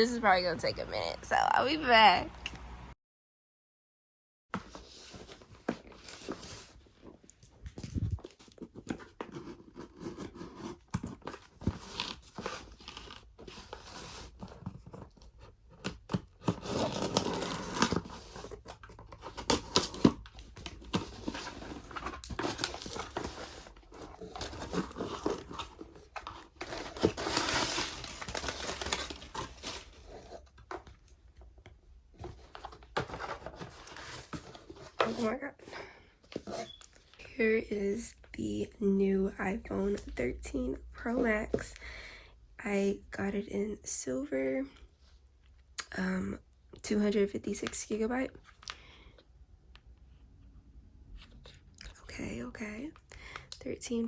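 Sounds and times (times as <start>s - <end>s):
packaging torn and crinkled: 26.5s - 30.0s.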